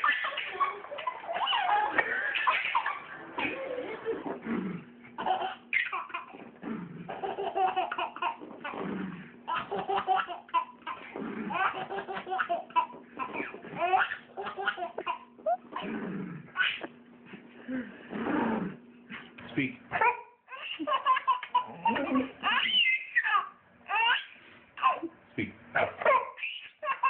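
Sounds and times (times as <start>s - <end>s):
baby laughing: 0.0s - 4.4s, 5.2s - 8.8s, 9.5s - 15.9s, 16.6s - 17.0s, 20.0s - 25.1s, 25.8s - 27.0s.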